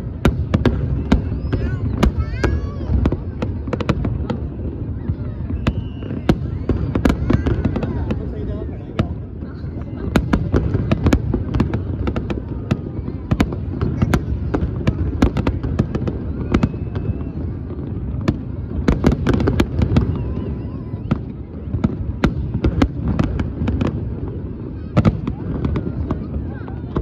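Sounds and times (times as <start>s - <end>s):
fireworks bangs and crackles: 0.0s - 27.0s.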